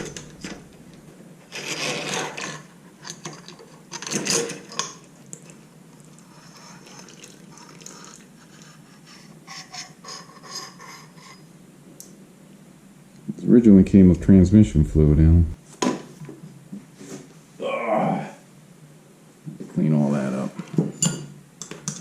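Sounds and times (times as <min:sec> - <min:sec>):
metal parts scraping and rubbing: 0:01.5 - 0:05.0, 0:08.5 - 0:11.5.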